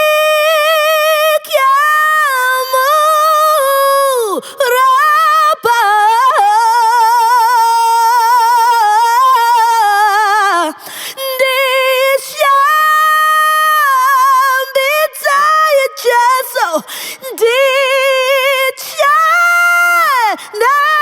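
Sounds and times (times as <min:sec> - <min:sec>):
woman singing unaccompanied: 0:00.0 - 0:21.0
breath: 0:04.4 - 0:04.6, 0:10.8 - 0:11.2, 0:16.8 - 0:17.3, 0:20.4 - 0:20.6.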